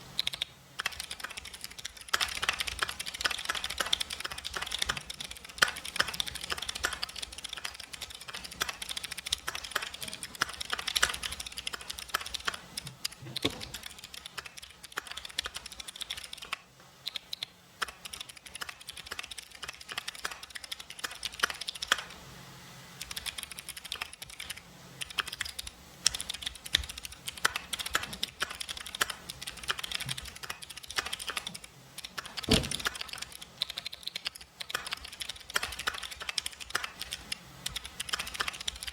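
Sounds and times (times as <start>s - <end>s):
mechanical keyboard typing: 0.1s - 22.1s, 23.0s - 38.9s
deeper keyboard thump: 32.5s - 32.8s.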